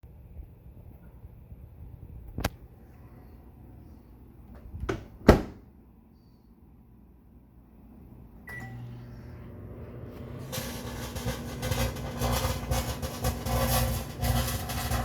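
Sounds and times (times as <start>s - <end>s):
microwave hum: 0.2s - 6.0s, 7.2s - 15.0s
microwave beep: 8.4s - 9.2s
plasma arc crackling and buzzing: 9.8s - 15.0s.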